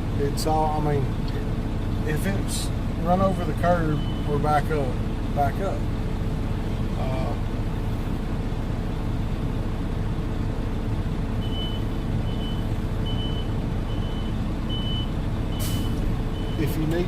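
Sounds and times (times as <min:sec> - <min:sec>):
diesel truck engine running: 0:00.0 - 0:17.0
reversing alarm beeping: 0:03.9 - 0:04.4, 0:11.4 - 0:16.8.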